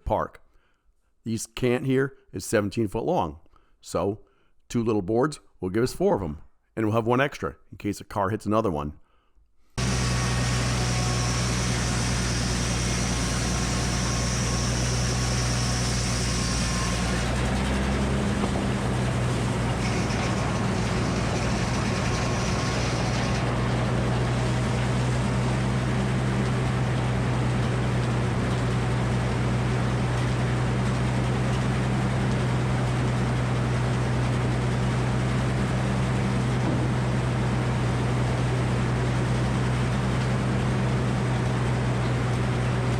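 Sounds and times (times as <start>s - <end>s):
sawmill engine running: 9.8s - 42.9s.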